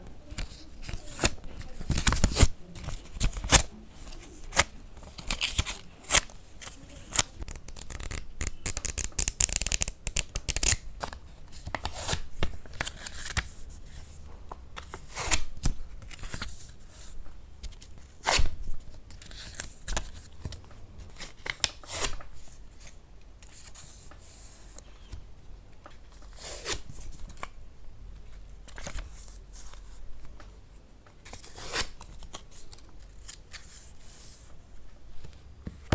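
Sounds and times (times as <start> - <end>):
sticky crackling peels: 4.5 - 10.8.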